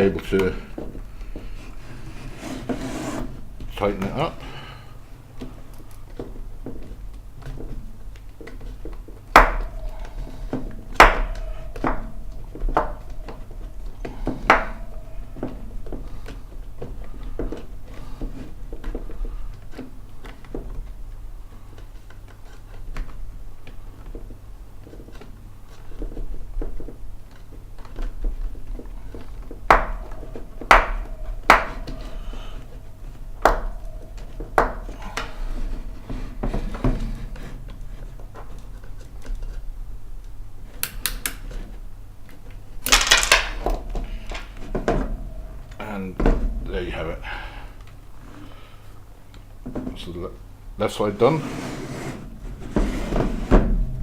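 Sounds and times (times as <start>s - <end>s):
steady low hum: 0.0s - 54.0s
tools knocking on acrylic frame: 9.3s - 16.1s, 29.1s - 32.8s, 33.4s - 37.5s.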